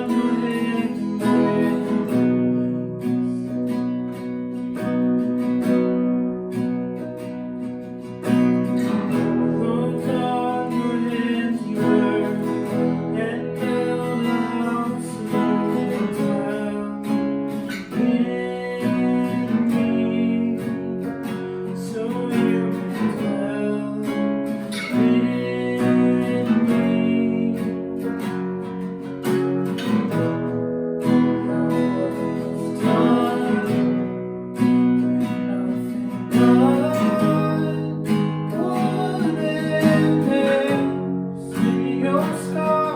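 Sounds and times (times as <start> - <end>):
acoustic guitar strumming chords: 0.0 - 42.9.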